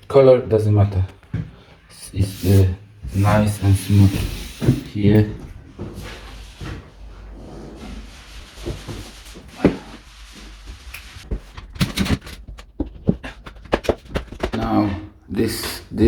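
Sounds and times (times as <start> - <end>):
plasterboard rubbing and scraping: 2.1 - 14.6.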